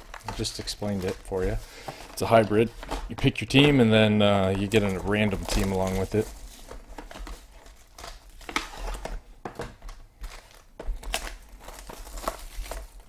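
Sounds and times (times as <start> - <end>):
plastic wrapping crinkling: 0.0 - 13.0.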